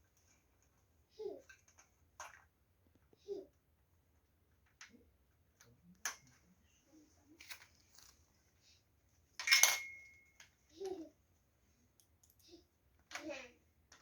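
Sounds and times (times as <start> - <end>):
small metal parts clinking: 9.4 - 10.5.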